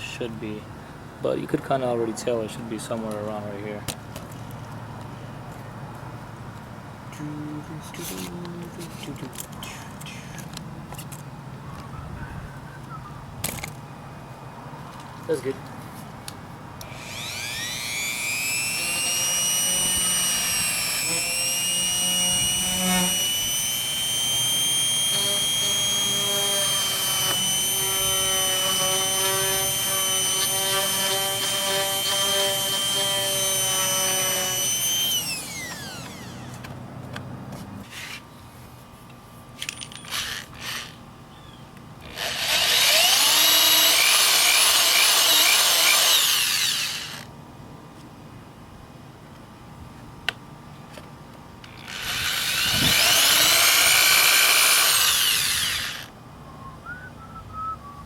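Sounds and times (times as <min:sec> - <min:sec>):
rotary tool high whine: 0:16.8 - 0:36.7, 0:39.6 - 0:41.0, 0:42.0 - 0:47.3, 0:51.6 - 0:56.2.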